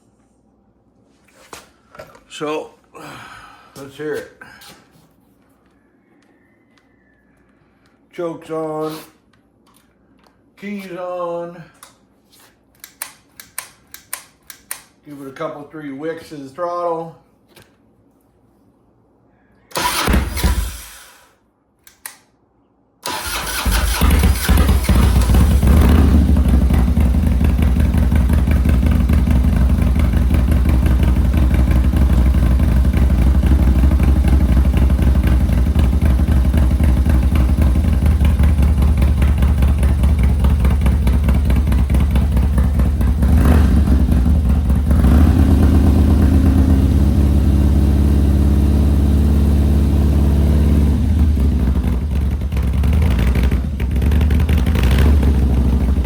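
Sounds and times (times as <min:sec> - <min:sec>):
motorcycle engine idling: 0:23.1 - 0:48.6, 0:51.2 - 0:56.0.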